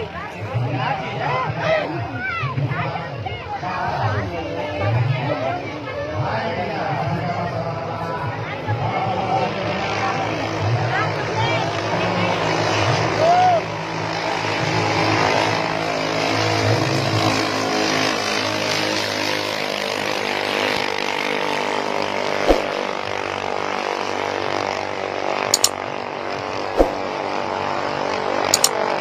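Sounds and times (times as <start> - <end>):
short clicks: 25.6 - 25.8, 28.5 - 28.8.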